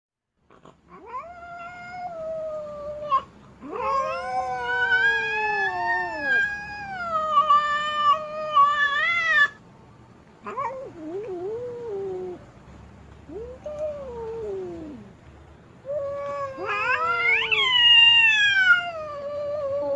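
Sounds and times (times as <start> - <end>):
cat caterwauling: 0.9 - 9.6, 10.4 - 12.5, 13.3 - 15.1, 15.8 - 19.9.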